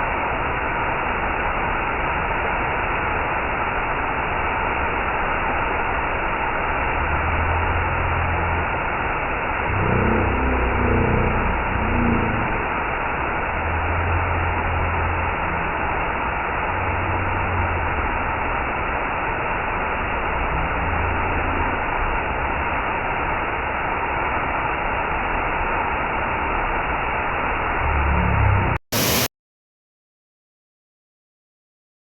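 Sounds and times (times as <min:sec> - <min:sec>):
waterfall roar: 0:00.0 - 0:29.3
low rumble: 0:05.6 - 0:23.2, 0:27.1 - 0:29.3.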